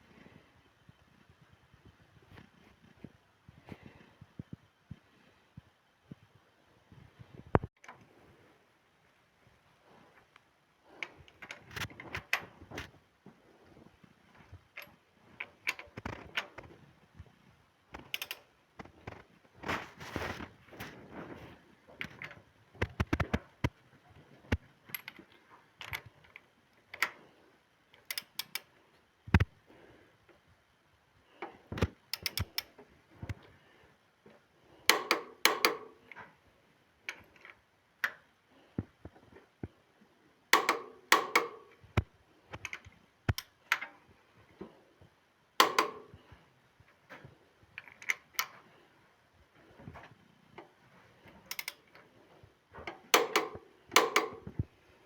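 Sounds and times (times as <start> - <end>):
mechanical clicks and clatter: 17.9 - 20.9, 27.9 - 29.5, 31.4 - 33.5, 34.9 - 36.3, 40.5 - 44.0, 45.6 - 46.3, 50.0 - 52.1, 52.8 - 54.7.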